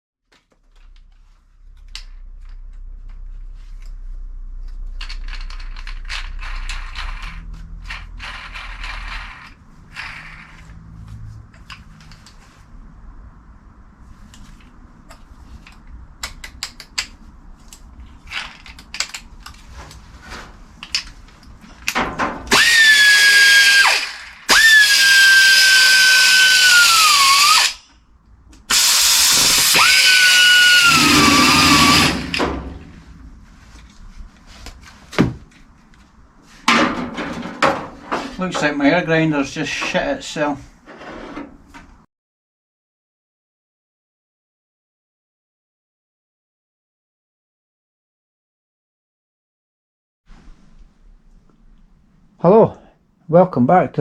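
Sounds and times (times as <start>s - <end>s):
low hum: 0.7s - 16.2s, 29.3s - 36.4s
pneumatic grinder whining: 5.9s - 10.8s, 22.5s - 27.9s, 28.7s - 32.8s.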